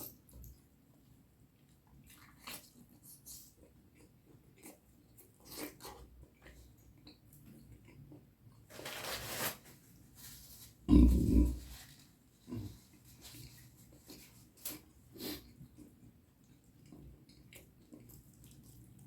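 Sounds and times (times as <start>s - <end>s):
person chewing food: 0.0s - 8.6s, 12.4s - 19.0s.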